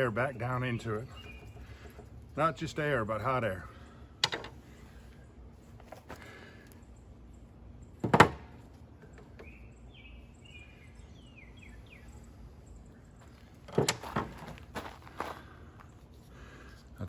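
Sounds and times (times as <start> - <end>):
bird singing whistled notes: 0.3 - 1.6, 9.4 - 12.3.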